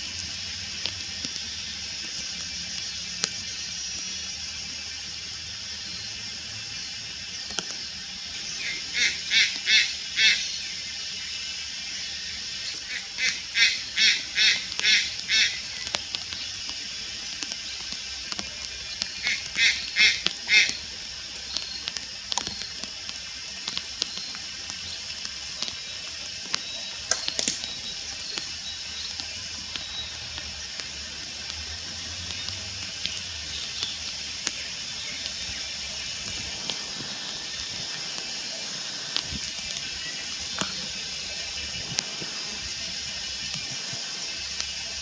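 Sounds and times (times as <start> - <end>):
steady high-pitched hiss: 0.0 - 45.0
night heron honking calls: 8.4 - 10.6, 12.9 - 15.8, 19.2 - 20.8.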